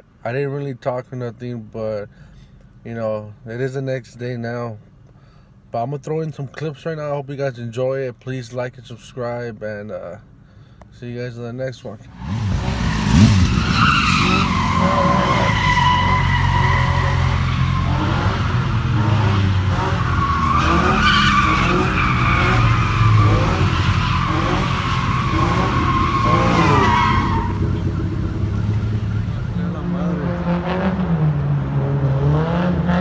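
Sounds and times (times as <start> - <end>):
car tyres squealing: 12.1 - 33.0
car engine at high revs: 12.2 - 33.0.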